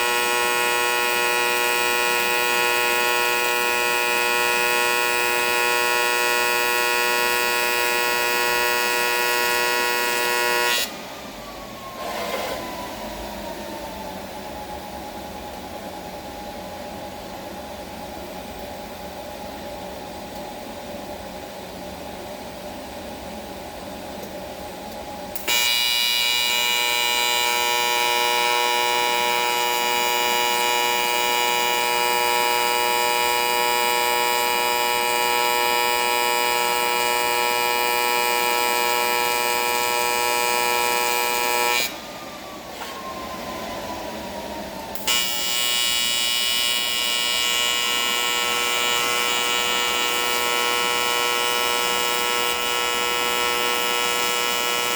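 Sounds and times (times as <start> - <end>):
welding arc buzzing: 0.0 - 10.9, 25.4 - 42.0, 44.9 - 54.9
welder humming with falling whine: 0.0 - 54.9.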